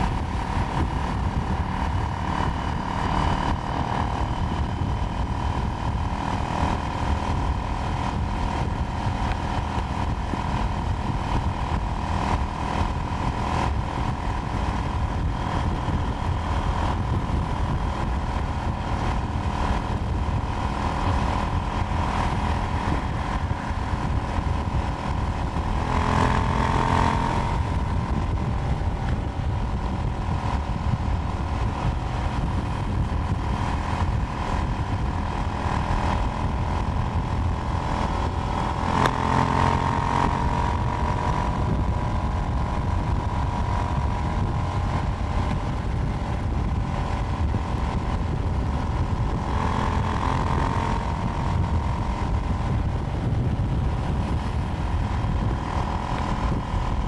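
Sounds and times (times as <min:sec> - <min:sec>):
motorcycle engine running: 0:00.0 - 0:57.0.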